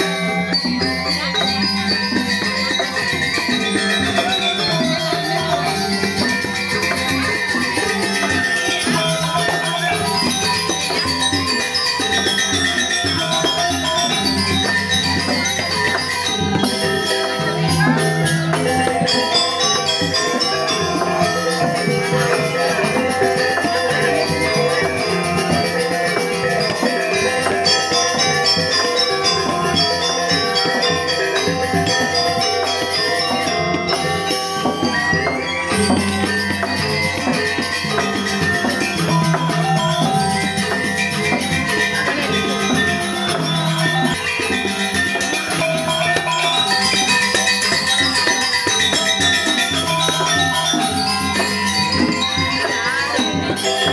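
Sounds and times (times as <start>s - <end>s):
gamelan music: 0.0s - 53.9s.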